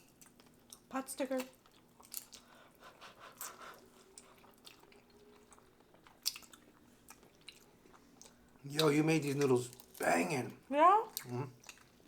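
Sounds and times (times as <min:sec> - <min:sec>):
person chewing food: 0:00.0 - 0:10.1, 0:11.1 - 0:12.0
wet mouth clicks and smacks: 0:01.4 - 0:02.5, 0:06.0 - 0:08.9.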